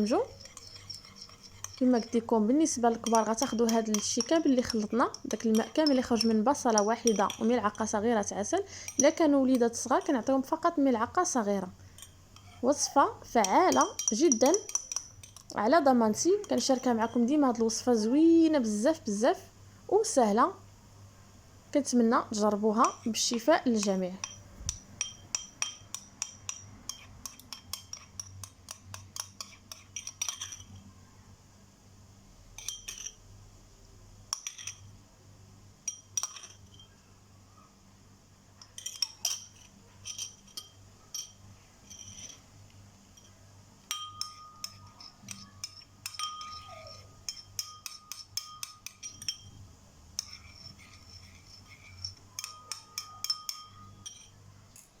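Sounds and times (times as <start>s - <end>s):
spoon clinking against glass: 0.0s - 7.8s, 13.4s - 15.6s, 22.8s - 30.8s, 32.6s - 33.2s, 34.3s - 34.9s, 35.8s - 37.0s, 38.6s - 42.4s, 43.2s - 49.6s, 50.2s - 54.4s.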